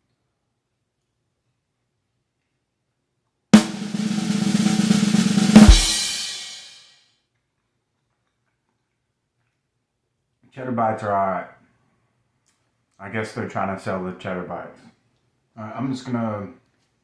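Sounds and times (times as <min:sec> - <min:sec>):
bass drum hit: 0:03.6 - 0:06.4
cymbal crash: 0:03.6 - 0:06.8
drum roll: 0:03.6 - 0:06.8.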